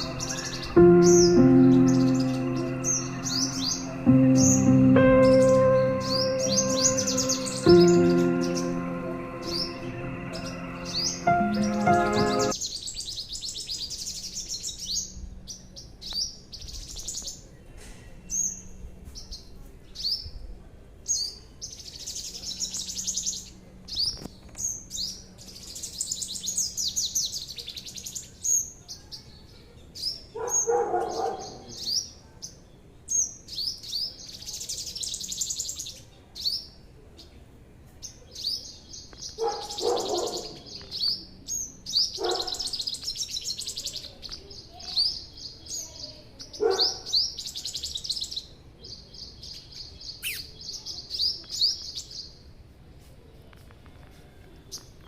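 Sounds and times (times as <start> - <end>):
harsh bird calls: 0.0 - 9.8
songbird chirping and trilling: 0.0 - 17.6, 21.1 - 37.4, 38.0 - 52.5.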